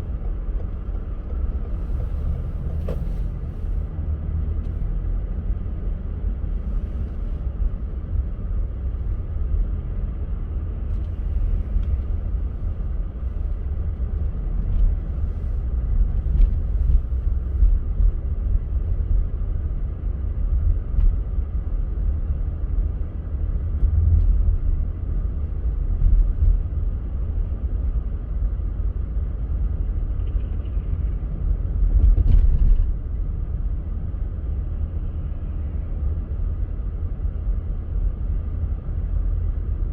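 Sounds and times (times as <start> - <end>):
car road and engine rumble: 0.0 - 39.9.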